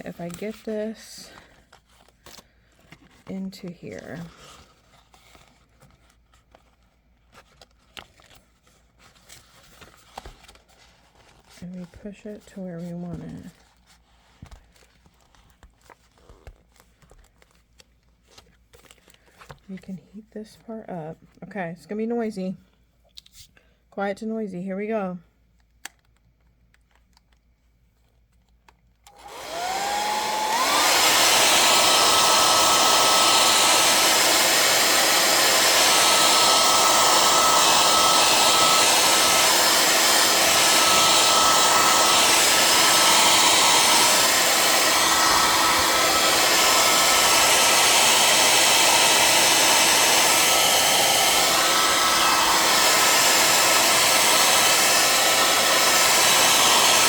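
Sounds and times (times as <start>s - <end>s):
hairdryer blowing with high whine: 29.1s - 57.0s.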